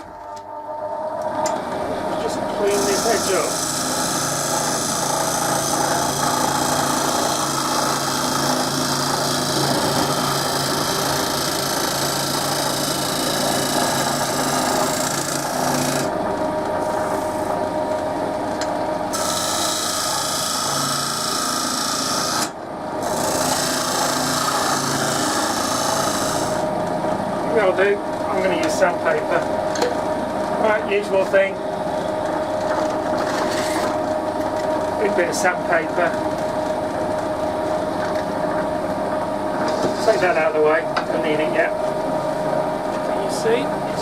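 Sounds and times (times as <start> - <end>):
lathe motor hum: 0.0 - 44.0
turning tool scraping wood: 2.2 - 16.2, 19.1 - 26.7, 39.7 - 40.5.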